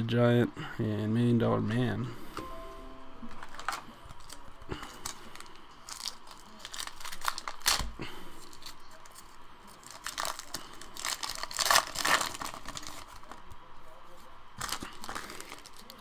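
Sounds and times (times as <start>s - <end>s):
wrapper tearing and crinkling: 3.4s - 13.5s, 14.6s - 16.0s.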